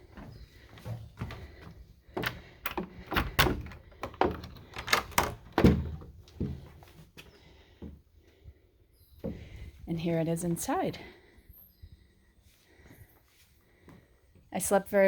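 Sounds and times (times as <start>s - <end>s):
door knocks and thuds: 2.2s - 6.6s.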